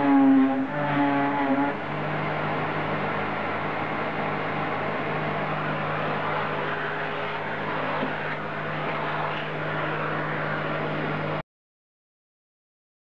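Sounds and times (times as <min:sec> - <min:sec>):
machine humming and whirring: 0:00.0 - 0:11.4.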